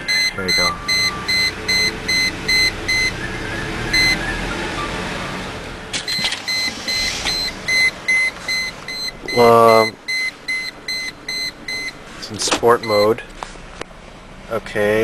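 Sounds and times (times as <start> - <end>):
rapid electronic warning beeps: 0.0 - 3.2, 3.9 - 4.2, 6.1 - 12.0, 12.8 - 13.2.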